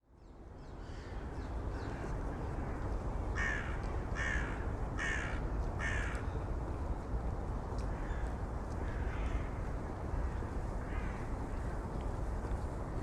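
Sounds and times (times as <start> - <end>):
crow cawing: 3.4 - 6.2.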